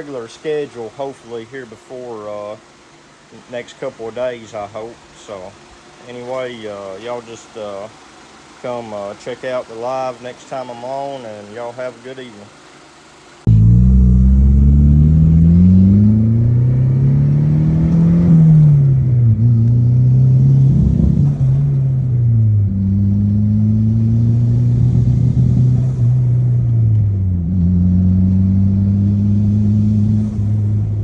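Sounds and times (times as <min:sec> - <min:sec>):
car engine accelerating: 0:13.4 - 0:31.0.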